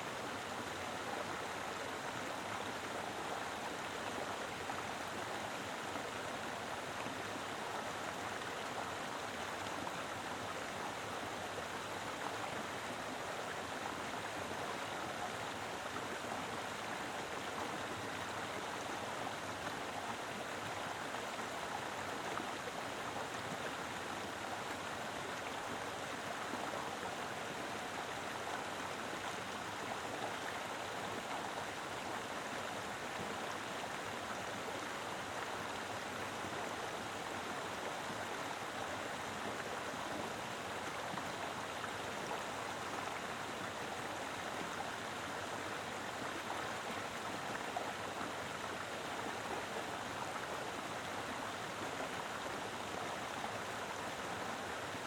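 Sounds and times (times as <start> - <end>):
river flowing over rocks: 0.0 - 55.0.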